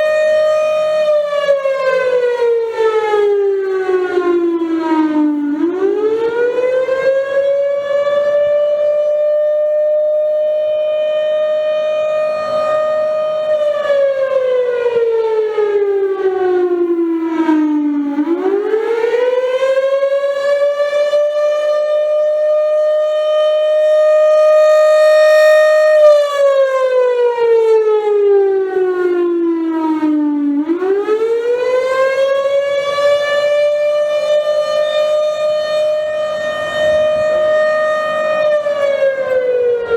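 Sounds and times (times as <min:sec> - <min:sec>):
siren wailing: 0:00.0 - 0:39.9.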